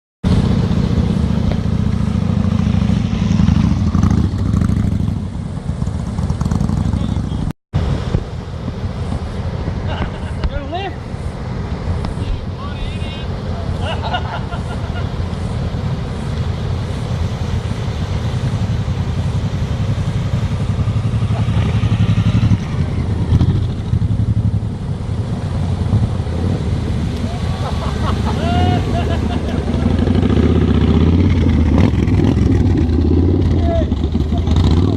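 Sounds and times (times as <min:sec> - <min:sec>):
motorcycle engine running: 0:00.3 - 0:07.5, 0:15.5 - 0:26.5, 0:29.0 - 0:34.9.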